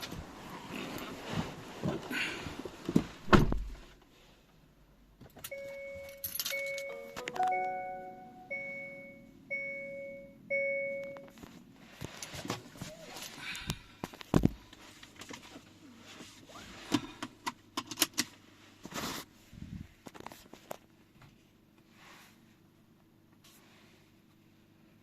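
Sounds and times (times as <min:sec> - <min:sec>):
two-note electronic warning chime: 0:05.5 - 0:11.3
low chord tones: 0:06.8 - 0:09.4.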